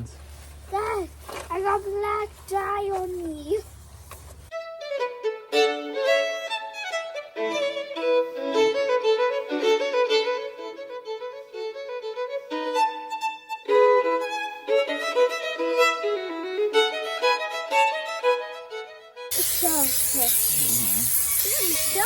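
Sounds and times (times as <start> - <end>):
solo violin playing: 4.5 - 19.3.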